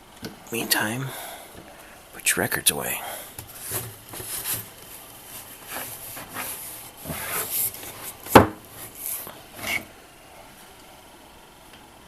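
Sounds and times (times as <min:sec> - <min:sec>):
records rubbing and sliding: 0:03.5 - 0:09.9.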